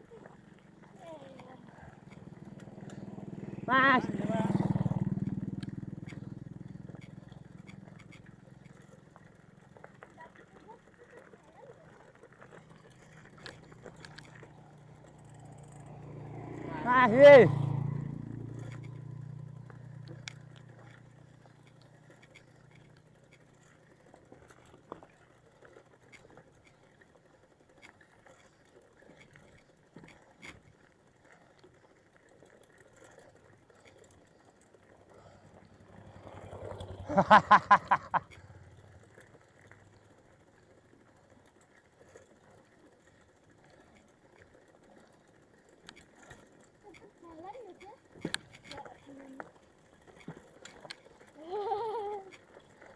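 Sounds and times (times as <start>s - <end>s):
bicycle ticking and clicking: 0.0s - 52.9s
low vehicle hum: 12.3s - 24.4s.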